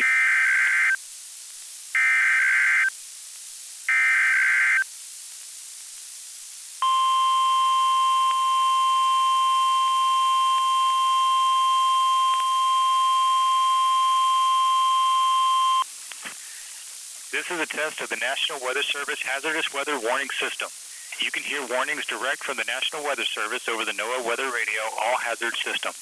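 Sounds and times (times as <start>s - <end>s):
radio hiss: 6.8s - 26.0s.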